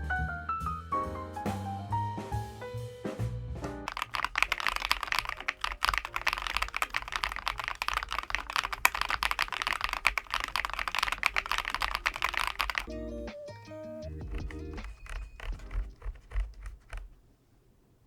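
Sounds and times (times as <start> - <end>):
mechanical keyboard typing: 3.9 - 13.0, 14.2 - 17.2.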